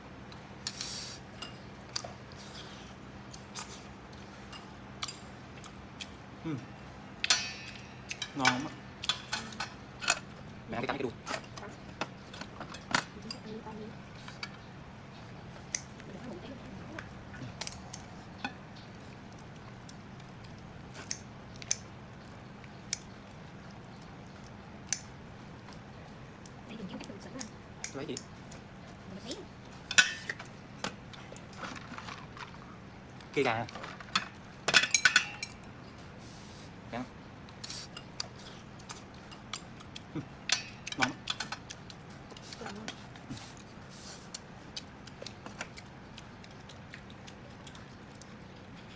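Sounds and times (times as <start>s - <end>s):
faint steady hum: 0.0s - 48.9s
chewing chicken: 8.1s - 26.7s, 37.4s - 48.9s
person chewing: 37.5s - 48.9s.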